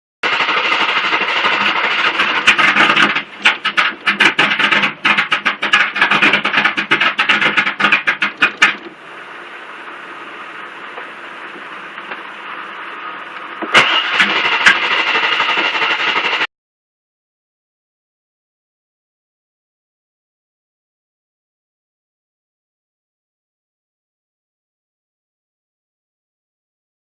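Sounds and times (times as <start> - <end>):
engine cranking on starter: 0.2 - 16.5.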